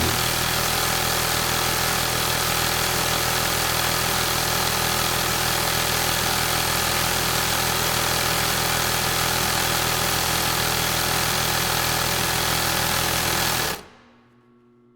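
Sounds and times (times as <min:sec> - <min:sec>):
sewing machine running: 0:00.0 - 0:02.8, 0:11.5 - 0:13.9.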